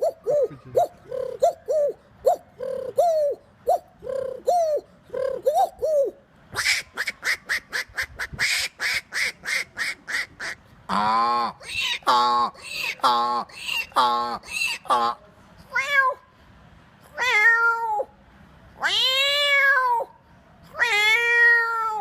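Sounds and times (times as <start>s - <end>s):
man imitating bird calls: 0.0s - 7.9s, 10.4s - 15.2s.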